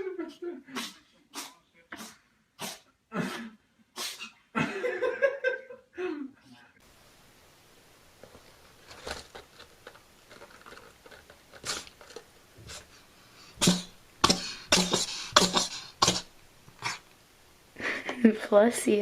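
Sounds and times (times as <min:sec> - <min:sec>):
cat sneezing: 0:00.7 - 0:04.4, 0:11.6 - 0:11.9, 0:13.6 - 0:17.0.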